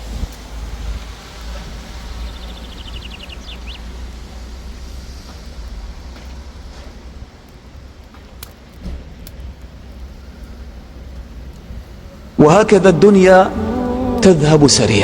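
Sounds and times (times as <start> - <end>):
wind rumble on microphone: 0.0 - 8.0
background hiss: 0.0 - 15.0.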